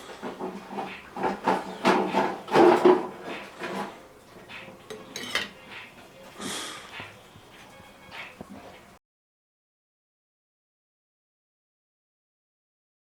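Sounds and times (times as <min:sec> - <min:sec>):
utensils clinking against dishes: 0:00.0 - 0:08.9.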